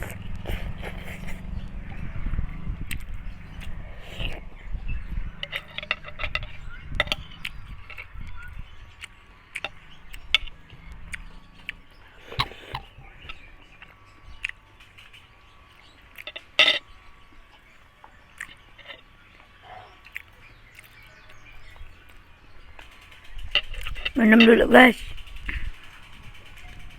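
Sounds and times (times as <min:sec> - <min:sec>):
person chewing food: 0:00.0 - 0:01.4, 0:02.9 - 0:04.4, 0:08.9 - 0:14.7, 0:18.3 - 0:21.0.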